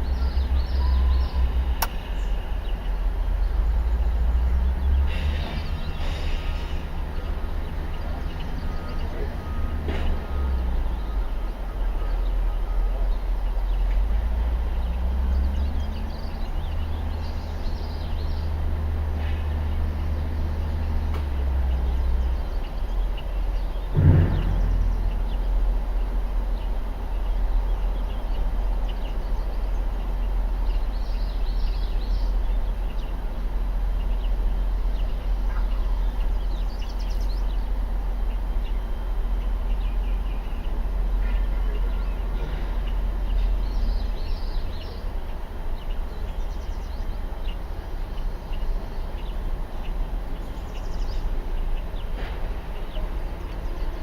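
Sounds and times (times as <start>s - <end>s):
birds chirping: 0.0s - 54.0s
low rumble: 23.4s - 27.8s.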